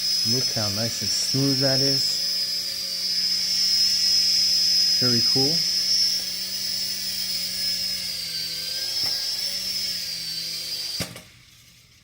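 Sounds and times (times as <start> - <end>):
small helicopter rotor whine: 0.0 - 12.0
motor cutoff click: 2.2 - 11.4.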